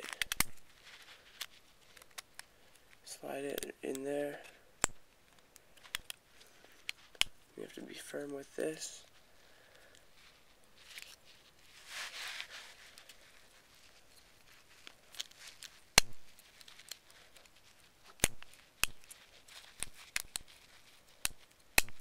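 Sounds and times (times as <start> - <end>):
plastic parts snapping into place: 0.0 - 0.6
soft plastic scrape: 10.2 - 15.8.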